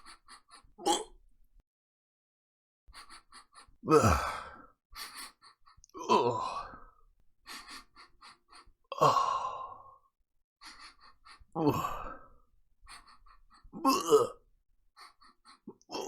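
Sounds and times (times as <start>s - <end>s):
person groaning in disgust: 3.8s - 4.6s, 6.0s - 6.8s, 11.6s - 12.2s.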